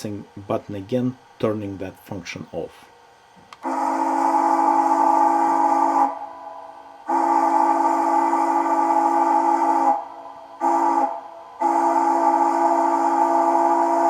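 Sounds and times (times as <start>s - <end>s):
steam locomotive chime whistle: 3.6s - 14.0s.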